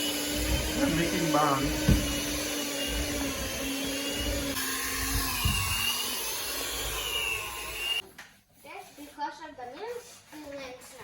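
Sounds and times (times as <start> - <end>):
electric mixer beating dough: 0.0 - 8.0.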